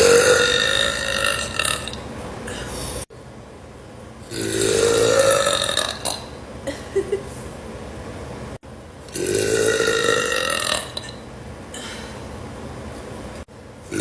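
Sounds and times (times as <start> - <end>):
woman burping: 0.0 - 2.6.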